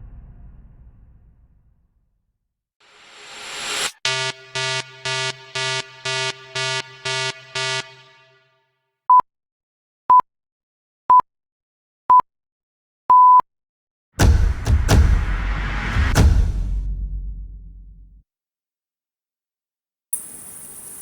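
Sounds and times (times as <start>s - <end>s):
buzzy electronic beeps: 3.7s - 8.4s.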